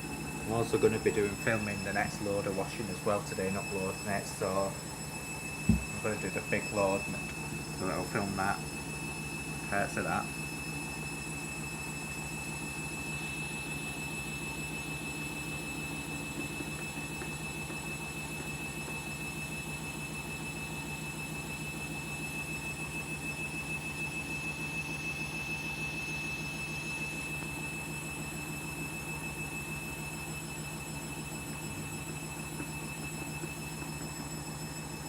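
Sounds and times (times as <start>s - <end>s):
washing machine spinning: 0.0s - 35.0s.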